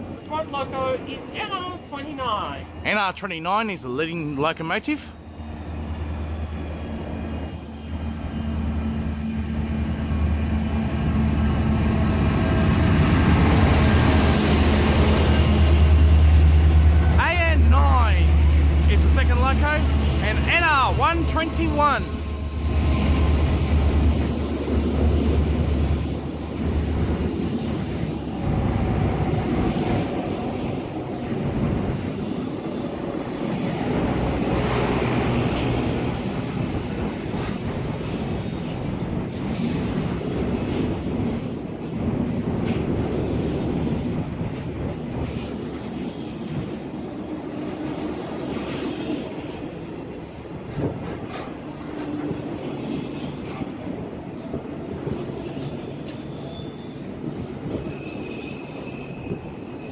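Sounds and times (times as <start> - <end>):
locomotive engine rumble: 5.1 - 39.5.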